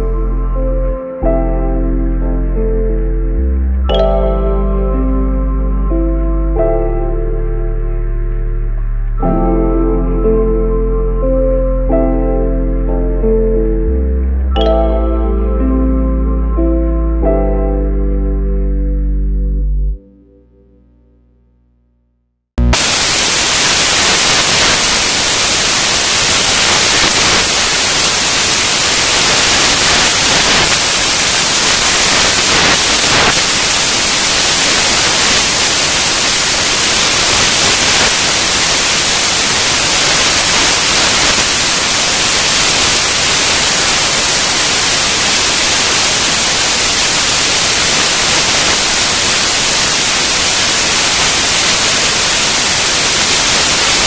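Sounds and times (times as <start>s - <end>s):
steady static hiss: 20.2s - 54.0s.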